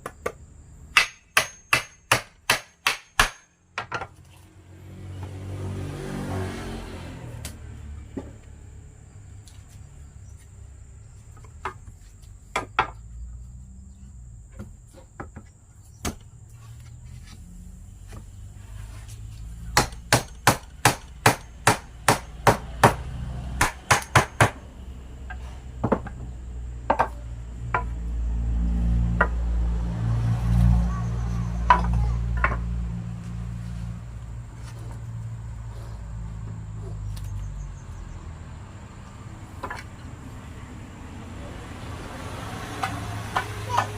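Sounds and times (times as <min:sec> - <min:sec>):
hammer striking wood: 0:00.0 - 0:04.1, 0:19.7 - 0:24.6, 0:25.8 - 0:26.2, 0:26.9 - 0:27.9.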